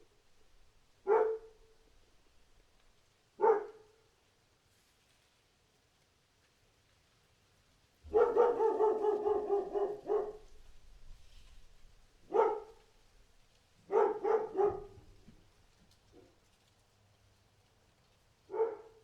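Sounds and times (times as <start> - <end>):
dog barking: 1.0 - 1.7, 3.4 - 4.0, 8.1 - 10.6, 12.2 - 12.8, 13.8 - 15.2, 18.5 - 19.0.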